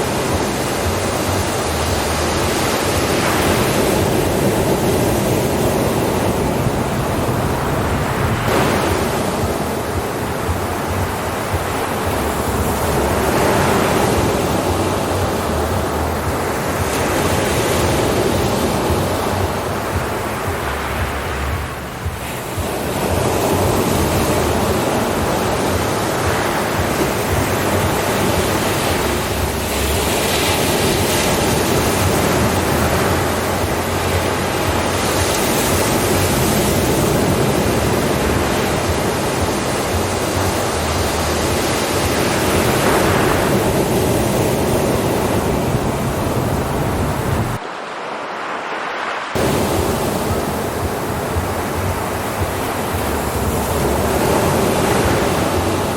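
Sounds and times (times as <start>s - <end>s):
ocean surf washing: 0.0s - 55.9s.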